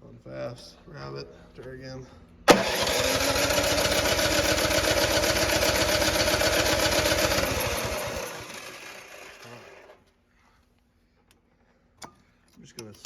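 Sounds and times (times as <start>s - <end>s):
engine cranking with starter whine: 2.5s - 10.0s.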